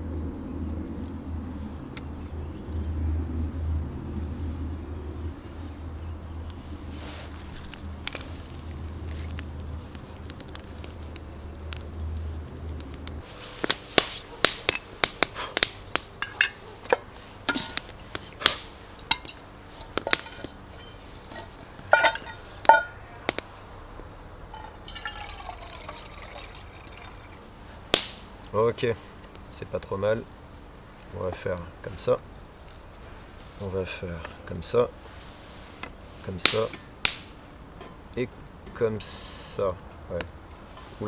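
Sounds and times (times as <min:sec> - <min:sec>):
low steady drone: 0:00.0 - 0:07.0
sharp cracks and clicks: 0:27.9 - 0:28.2, 0:36.4 - 0:37.4.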